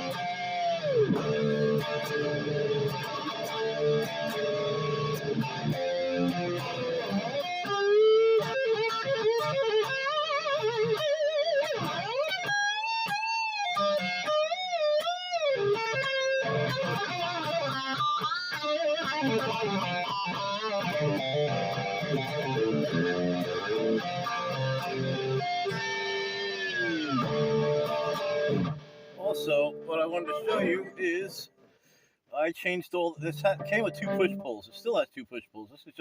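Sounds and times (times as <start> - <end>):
electric guitar riffs: 0.0 - 35.0.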